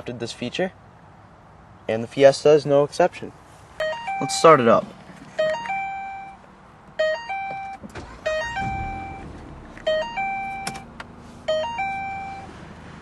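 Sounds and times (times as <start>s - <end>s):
car warning chime beeping: 3.8s - 12.6s
car engine starting: 7.0s - 13.0s.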